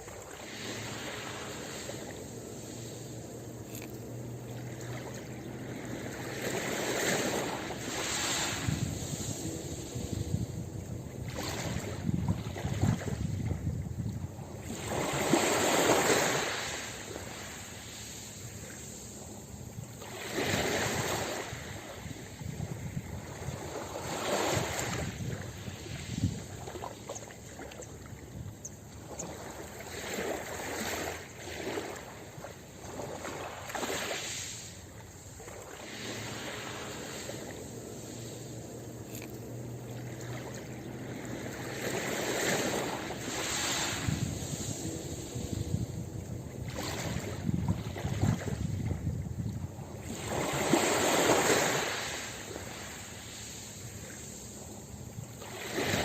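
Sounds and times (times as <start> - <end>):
ocean surf breaking: 4.1 - 13.3, 33.0 - 48.8.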